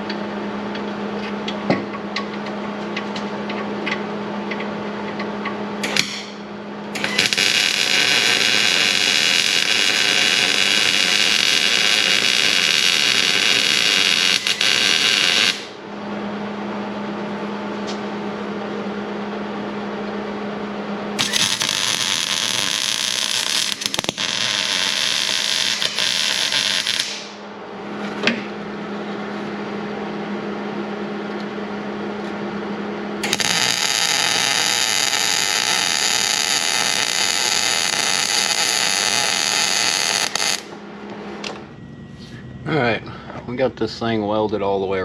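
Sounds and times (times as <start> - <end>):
low steady hum: 0.0 - 45.0
arc welding crackling hiss: 5.8 - 6.4, 7.0 - 15.8, 21.2 - 27.4, 33.2 - 40.7.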